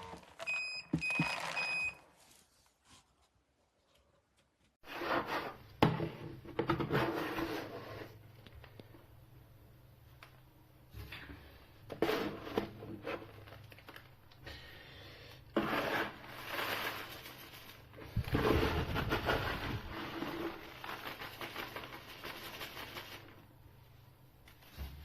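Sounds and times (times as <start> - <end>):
cat litter rustling and scraping: 4.9 - 8.2, 11.9 - 14.1, 15.6 - 23.4.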